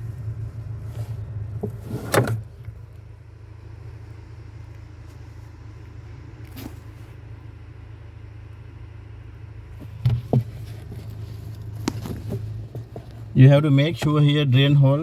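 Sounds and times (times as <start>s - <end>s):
freezer humming: 0.0s - 15.0s.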